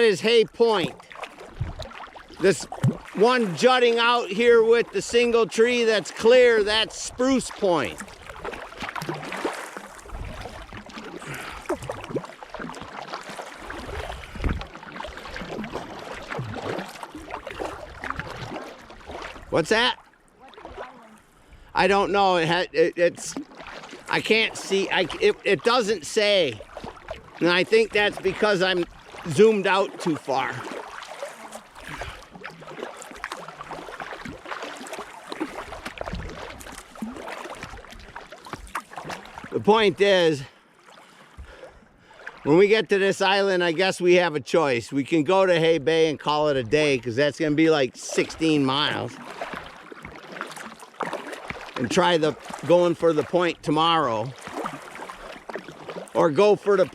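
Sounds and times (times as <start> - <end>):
paddle splashing water: 0.0 - 56.9
wind rumble on microphone: 1.6 - 1.8, 13.9 - 14.7.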